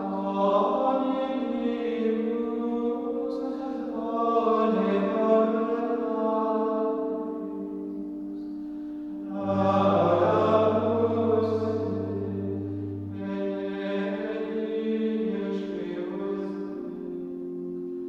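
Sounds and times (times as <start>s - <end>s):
held drone: 8.3s - 17.7s
deep bass note: 9.3s - 14.3s
choir-like chanting voices: 9.3s - 16.0s.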